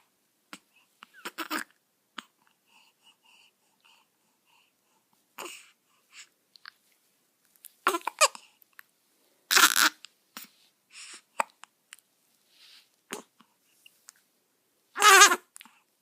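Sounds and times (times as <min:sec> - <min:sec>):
baby hiccupping: 0:01.1 - 0:02.3, 0:07.8 - 0:08.4, 0:09.5 - 0:10.0, 0:15.0 - 0:15.7.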